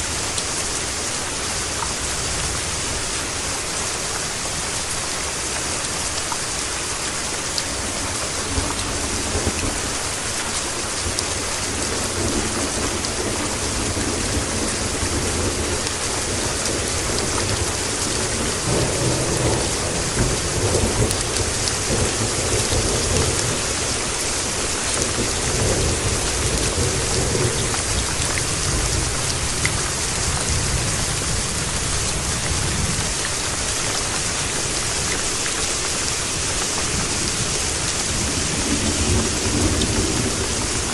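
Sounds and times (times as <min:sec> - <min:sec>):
steady rain falling: 0:00.0 - 0:40.9
rolling thunder: 0:36.8 - 0:40.9.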